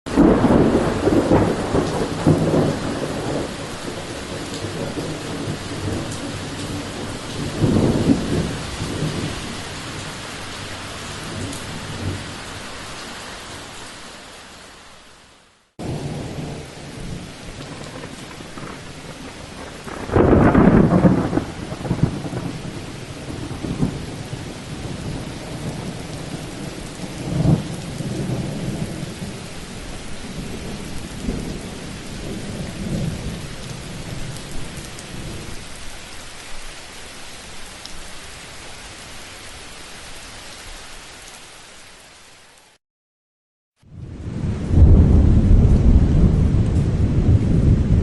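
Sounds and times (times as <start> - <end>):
thunder rumbling: 0.1 - 10.1, 15.8 - 35.6, 43.9 - 48.0
rain hissing: 0.1 - 42.8.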